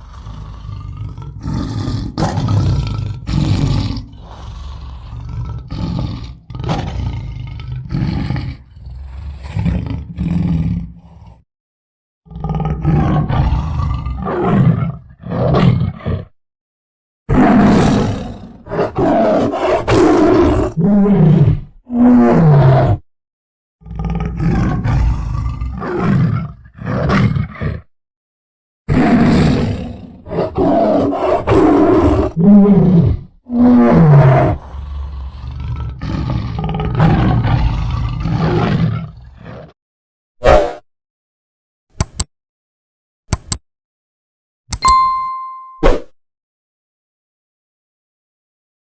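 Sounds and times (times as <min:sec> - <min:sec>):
tiger roaring and growling: 0:00.0 - 0:11.4, 0:12.3 - 0:16.3, 0:17.3 - 0:23.0, 0:23.8 - 0:27.9, 0:28.9 - 0:39.7.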